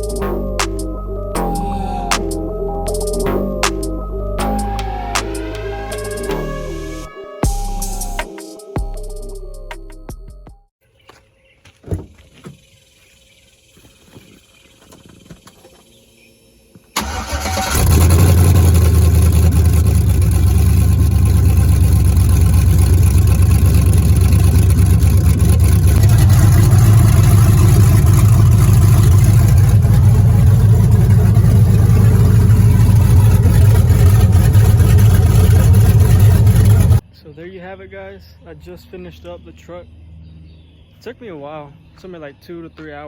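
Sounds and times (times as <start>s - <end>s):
pickup truck engine running: 17.0s - 37.0s.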